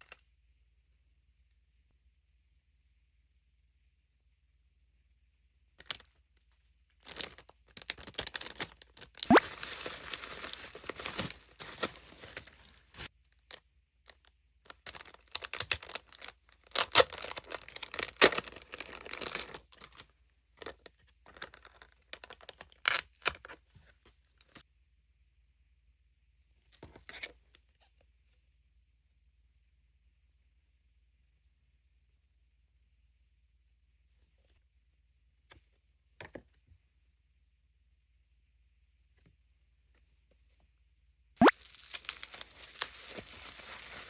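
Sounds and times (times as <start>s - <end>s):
packaging tearing and crinkling: 7.1s - 13.1s, 14.9s - 20.0s, 41.4s - 44.0s.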